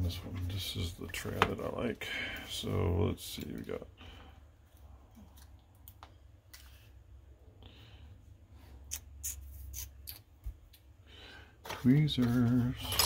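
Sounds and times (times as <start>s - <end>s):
metal tools clicking and rustling: 12.8s - 13.0s.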